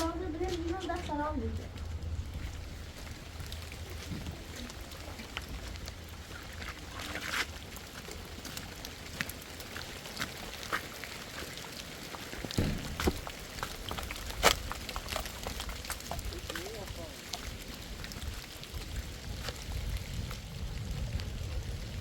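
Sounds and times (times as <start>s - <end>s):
low steady rumble: 0.0s - 6.9s
rain falling: 0.0s - 22.0s
drips and taps: 12.2s - 17.5s
loud knocks: 12.6s - 13.4s.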